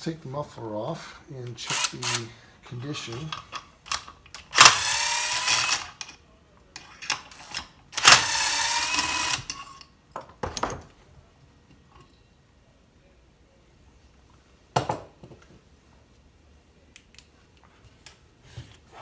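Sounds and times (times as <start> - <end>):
cordless power driver running: 1.6 - 2.3, 3.0 - 6.1, 7.1 - 9.7
handling clicks and knocks: 2.7 - 4.8.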